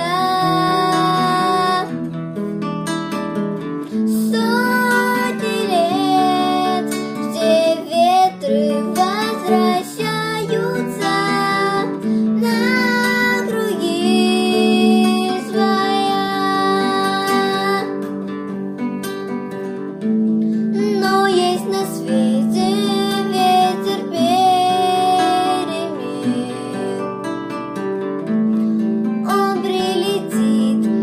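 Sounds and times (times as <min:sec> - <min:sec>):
high voice singing with vibrato: 0:00.0 - 0:02.0, 0:04.1 - 0:18.0, 0:20.7 - 0:27.2, 0:29.3 - 0:31.0
classical guitar accompaniment: 0:00.0 - 0:31.0.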